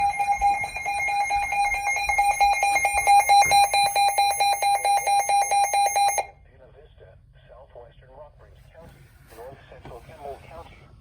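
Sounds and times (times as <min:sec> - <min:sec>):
rapidly pulsing alarm beep: 0:00.0 - 0:06.3.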